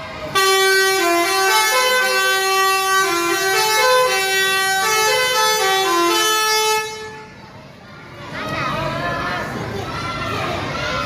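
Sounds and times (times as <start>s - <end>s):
bus horn playing a tune: 0.3s - 7.4s.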